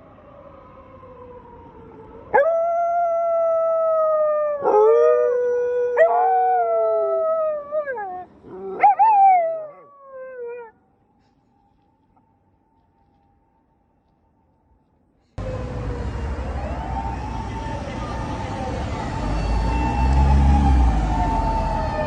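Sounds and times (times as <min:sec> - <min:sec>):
dogs howling: 0:02.4 - 0:10.7.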